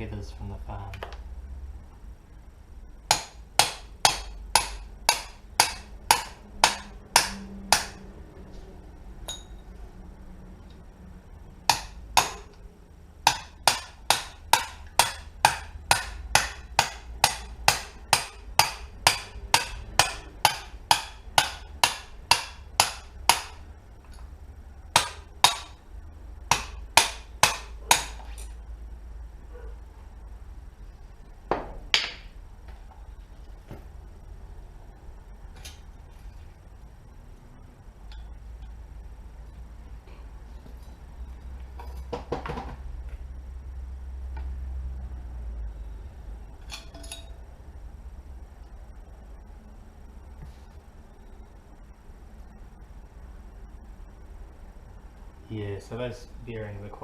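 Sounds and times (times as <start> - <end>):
hammer striking metal: 3.1 - 8.0, 11.7 - 12.6, 13.2 - 23.6, 24.9 - 25.8, 26.5 - 28.6.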